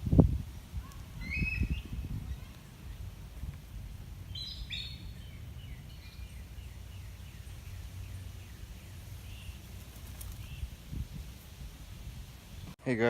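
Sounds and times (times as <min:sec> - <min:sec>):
small bird chirping: 0:00.8 - 0:03.2, 0:04.2 - 0:11.0.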